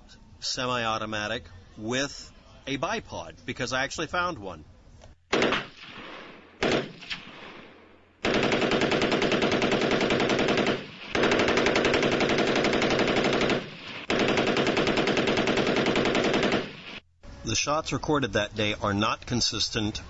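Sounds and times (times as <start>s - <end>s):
rifle rapid fire: 5.3s - 17.0s.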